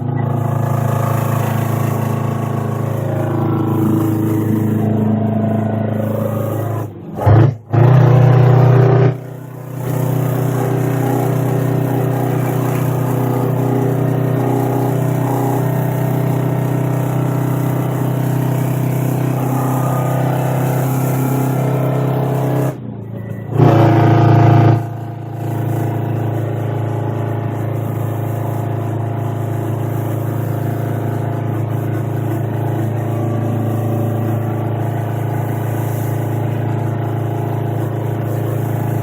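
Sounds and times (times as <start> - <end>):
diesel engine running loud: 0.0 - 39.0.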